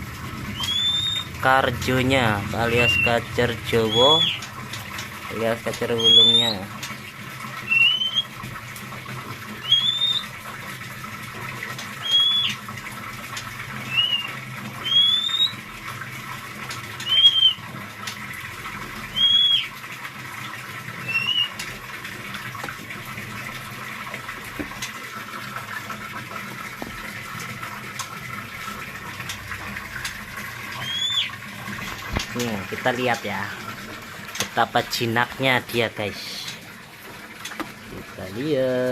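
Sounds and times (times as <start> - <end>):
steady background hum: 0.0 - 38.9
bird whistling calls: 0.5 - 1.3, 2.8 - 3.1, 3.8 - 4.5, 6.0 - 6.6, 7.6 - 8.4, 9.6 - 10.3, 12.0 - 12.6, 13.9 - 15.6, 17.0 - 17.6, 19.1 - 19.8, 21.0 - 21.6, 30.8 - 31.4.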